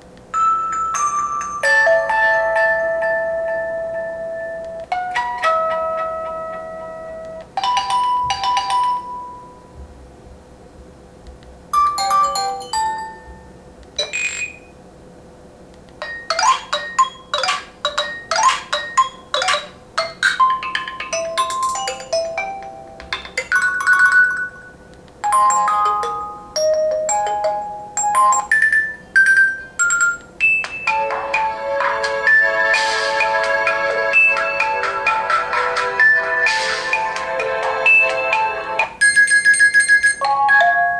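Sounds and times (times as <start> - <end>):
phone ringtones: 0.4 - 9.5, 11.8 - 13.4, 16.0 - 33.0.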